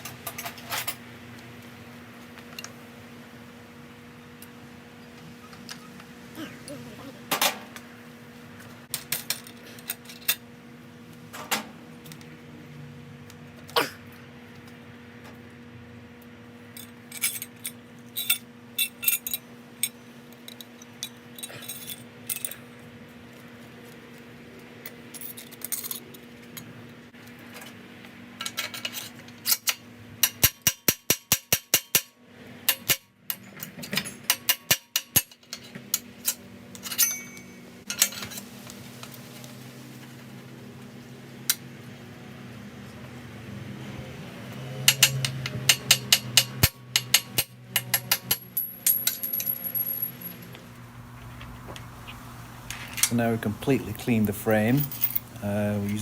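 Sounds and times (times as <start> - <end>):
metal tools clinking: 16.7 - 22.7, 35.3 - 38.5, 47.8 - 56.0
steady low hum: 45.0 - 56.0.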